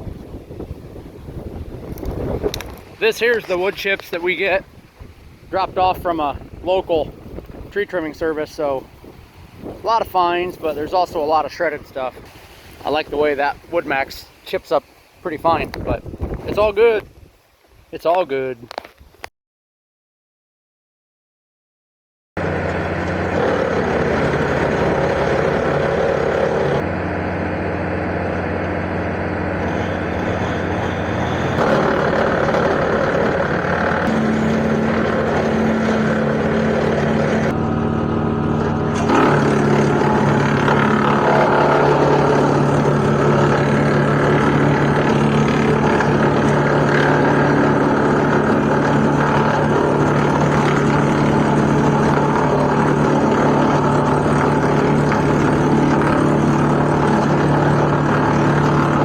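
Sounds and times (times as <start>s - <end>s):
tractor diesel engine running: 22.4s - 59.0s.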